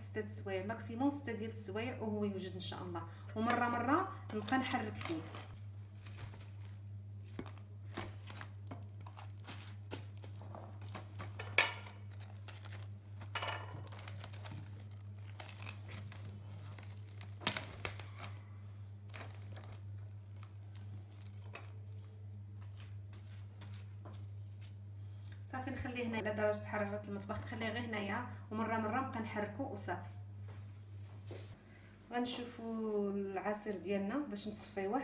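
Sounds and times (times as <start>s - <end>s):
steady low hum: 0.0s - 35.0s
cling film crinkling and tearing: 4.4s - 24.8s.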